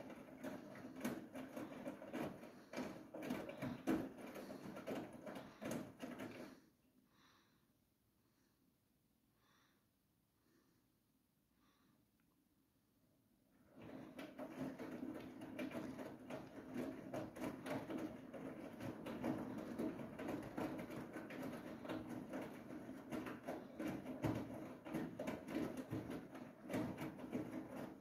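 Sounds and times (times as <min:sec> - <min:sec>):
washing machine spinning: 0:00.0 - 0:06.6, 0:13.6 - 0:28.0
small clicks and knocks: 0:13.8 - 0:28.0.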